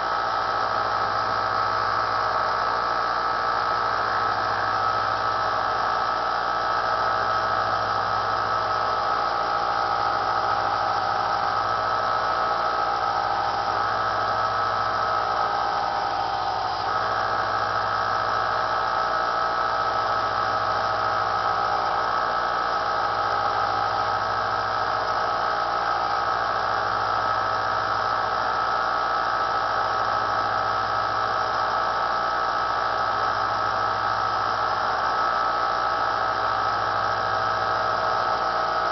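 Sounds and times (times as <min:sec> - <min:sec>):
belt sander whining: 0:00.0 - 0:28.0.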